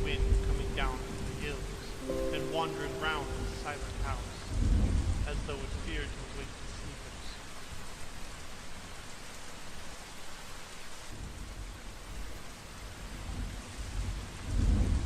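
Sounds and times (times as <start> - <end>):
steady rain falling: 0.0 - 15.0
low rumble of thunder: 4.0 - 6.7, 13.0 - 15.0.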